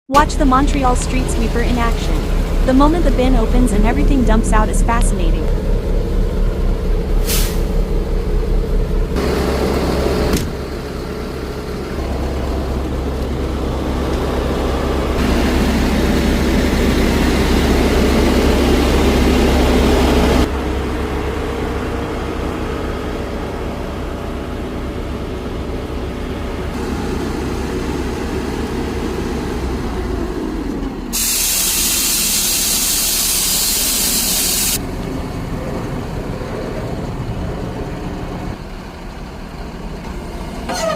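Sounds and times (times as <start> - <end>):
rushing mechanical noise: 0.1 - 40.9
street sweeper engine humming: 0.1 - 40.9
loud hiss of air: 31.1 - 34.8.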